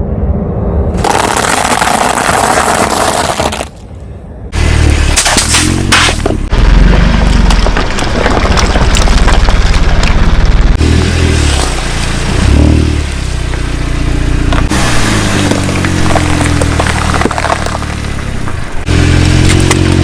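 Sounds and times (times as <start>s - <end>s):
car engine revving: 4.5s - 7.7s, 8.9s - 20.0s
sharp crackles and clicks: 5.1s - 10.8s, 14.5s - 20.0s.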